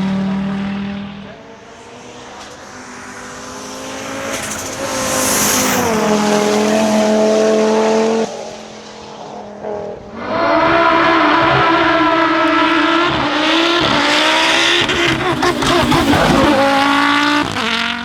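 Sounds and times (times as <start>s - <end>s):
rally car engine accelerating: 0.0s - 18.0s
engine pops: 12.4s - 18.0s.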